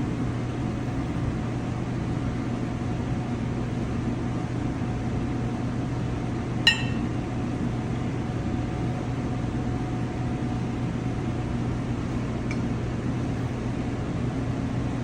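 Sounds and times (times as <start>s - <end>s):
ventilation fan hum: 0.0s - 15.0s
ringing clink of tableware: 6.7s - 7.1s.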